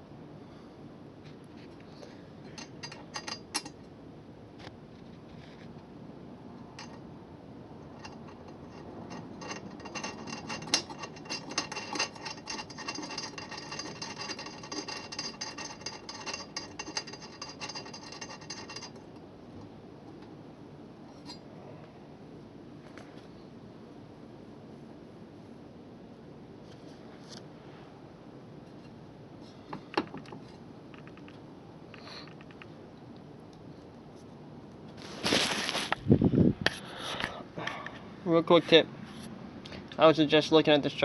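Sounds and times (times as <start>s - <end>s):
metal clinks: 8.0s - 19.2s, 29.7s - 32.7s.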